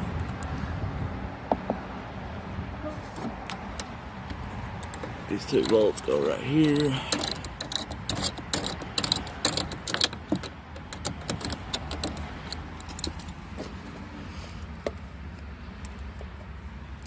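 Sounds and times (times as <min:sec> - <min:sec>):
metal bolts clinking: 0:03.4 - 0:13.8.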